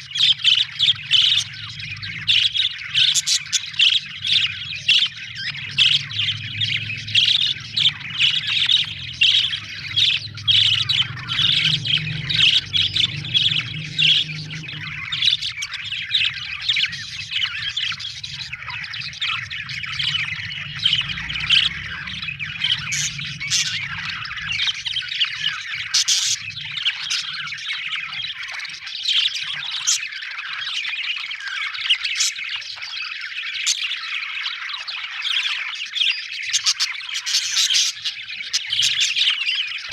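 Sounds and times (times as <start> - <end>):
budgerigars chattering: 0.0 - 39.9
low hum: 0.4 - 27.5.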